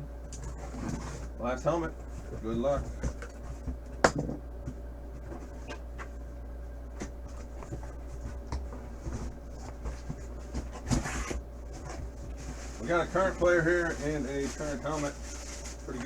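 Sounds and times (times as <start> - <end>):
packaging rubbing and rustling: 9.0 - 16.0.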